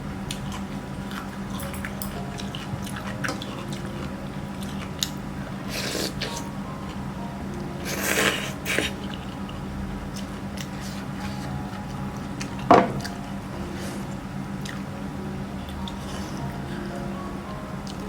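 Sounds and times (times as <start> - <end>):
steady low hum: 0.0 - 18.0
wet chewing: 0.3 - 7.0, 7.8 - 14.9.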